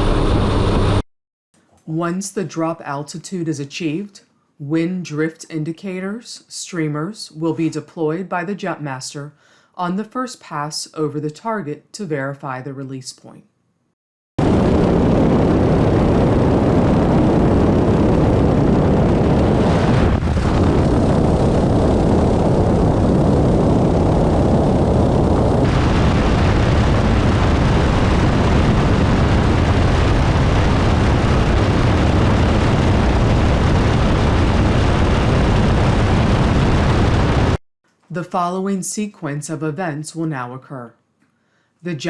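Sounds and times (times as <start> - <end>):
turboprop engines in flight: 0.0 - 1.0, 14.4 - 37.6
rushing air: 14.4 - 37.6.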